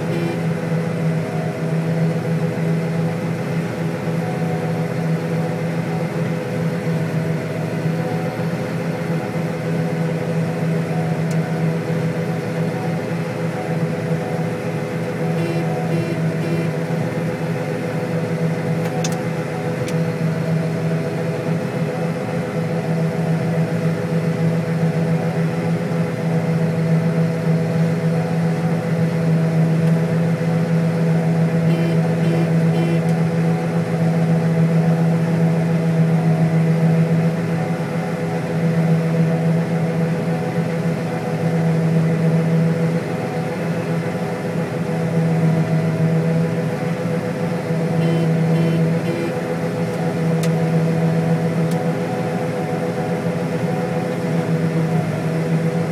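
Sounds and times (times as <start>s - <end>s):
combine harvester running: 0.0s - 55.9s
short beeps: 15.4s - 16.8s.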